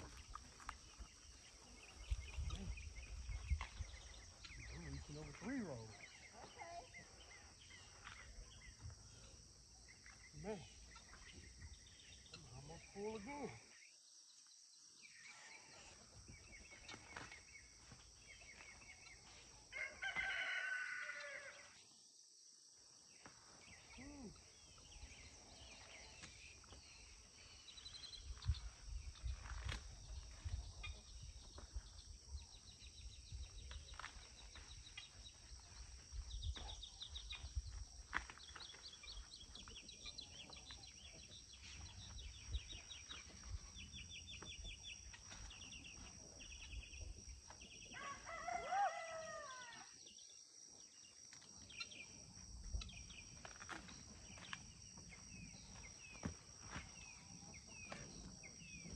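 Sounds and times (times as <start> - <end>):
high drone of insects: 0.0 - 58.9
rooster crowing: 19.7 - 21.7, 47.9 - 49.9
corn stalks rustling and cracking: 29.3 - 30.5, 53.4 - 54.5.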